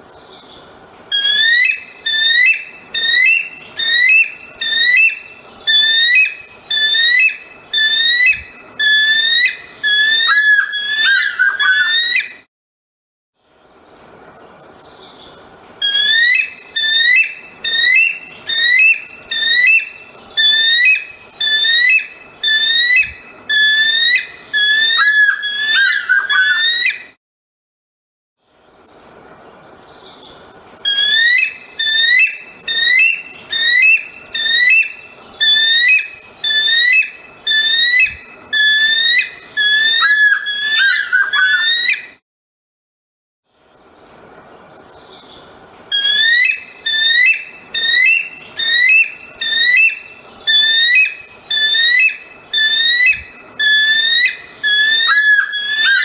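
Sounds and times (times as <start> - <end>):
eagle calling: 1.1 - 12.4, 15.8 - 27.1, 30.8 - 42.2, 45.9 - 56.0.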